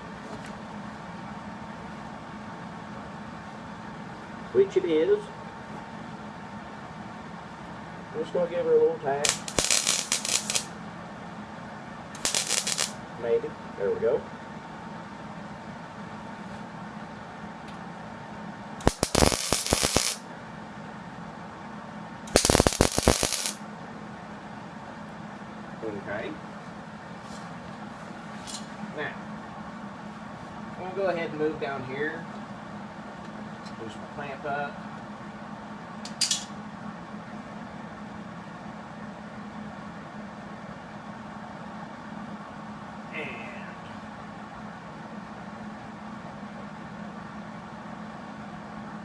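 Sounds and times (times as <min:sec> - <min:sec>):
low mechanical hum: 0:00.0 - 0:49.0
welding arc crackling: 0:09.2 - 0:10.8, 0:12.1 - 0:13.0, 0:18.8 - 0:20.2, 0:22.3 - 0:23.6.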